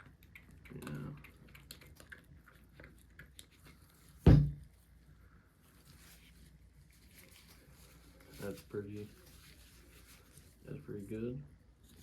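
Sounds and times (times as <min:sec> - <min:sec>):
sharp loud knock: 0:04.3 - 0:04.6.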